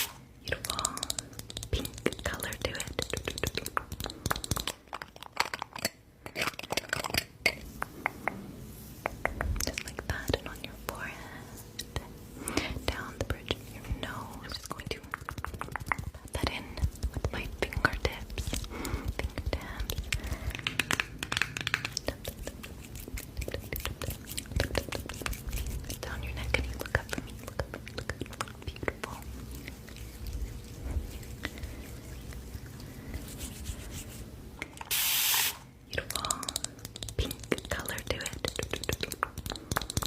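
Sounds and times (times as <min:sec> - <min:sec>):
small clicks and taps: 0:00.6 - 0:05.7, 0:18.4 - 0:22.3, 0:36.0 - 0:40.0.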